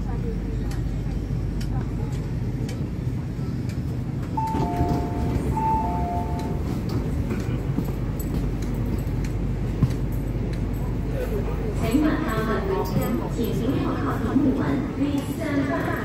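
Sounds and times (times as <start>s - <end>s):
train rumbling: 0.0s - 16.0s
two-tone electronic chime: 4.4s - 6.6s.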